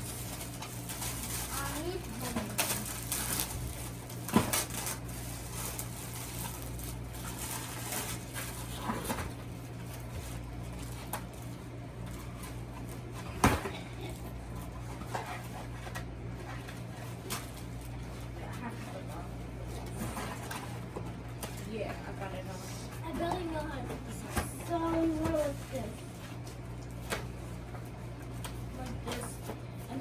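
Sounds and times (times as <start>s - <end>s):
toy packaging clicks and knocks: 0.1s - 9.4s.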